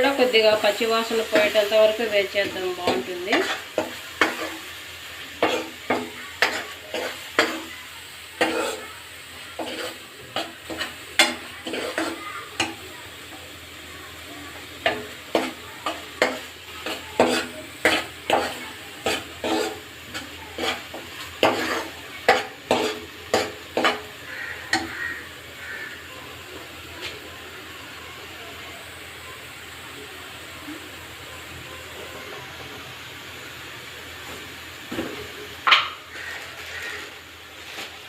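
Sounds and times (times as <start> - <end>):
paste sizzling in oil: 0.0 - 38.0
spoon knocking and scraping pan: 0.4 - 4.8, 5.4 - 7.8, 8.4 - 8.9, 9.5 - 12.9, 14.6 - 25.8.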